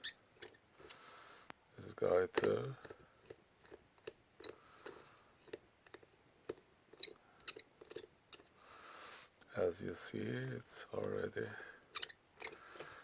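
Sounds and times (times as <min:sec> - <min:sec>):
screwdriver clicking on tiny screw: 0:00.0 - 0:01.0, 0:02.3 - 0:08.6, 0:11.9 - 0:13.0.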